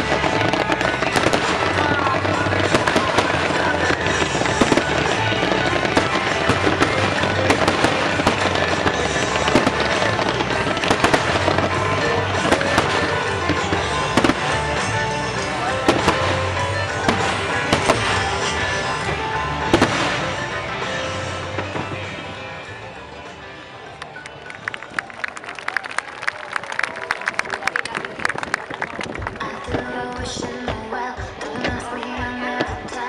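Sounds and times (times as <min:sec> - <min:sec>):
loud music: 0:00.0 - 0:24.3
fireworks bursting and crackling: 0:00.0 - 0:24.4, 0:27.0 - 0:33.0.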